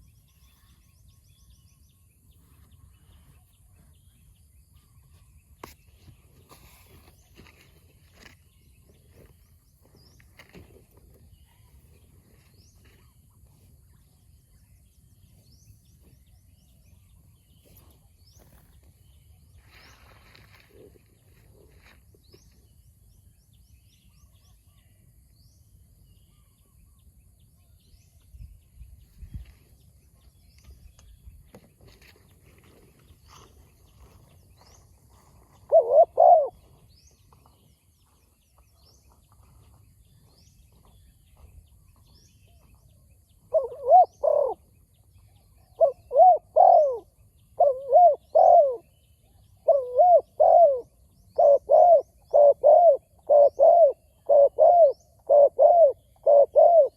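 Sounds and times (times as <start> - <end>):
faint small-bird chirps: 0.0 - 32.2
dove cooing: 35.4 - 36.8, 43.5 - 44.7, 45.7 - 48.9, 49.6 - 56.9.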